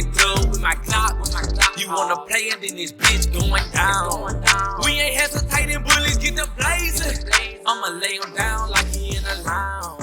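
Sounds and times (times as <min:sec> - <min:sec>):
heavy bass line: 0:00.0 - 0:01.7, 0:03.0 - 0:07.6, 0:08.4 - 0:10.0
rapping over a beat: 0:00.0 - 0:10.0
drum hits: 0:03.4 - 0:03.9.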